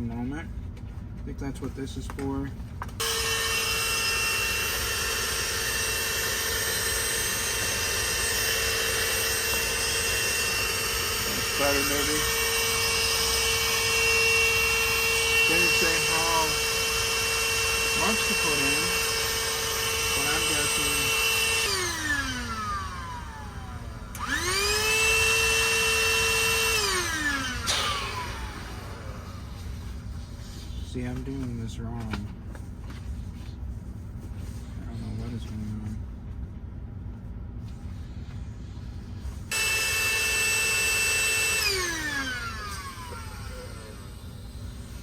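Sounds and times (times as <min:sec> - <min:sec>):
electric air pump whirring: 0:02.9 - 0:31.3, 0:37.7 - 0:45.0.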